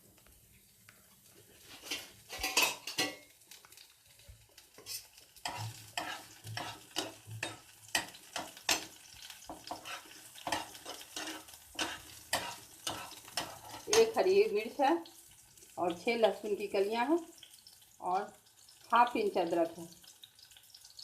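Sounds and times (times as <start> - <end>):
onion sizzling in hot oil: 0.0 - 21.0
spatula scraping a pan: 1.4 - 3.3, 4.8 - 14.2.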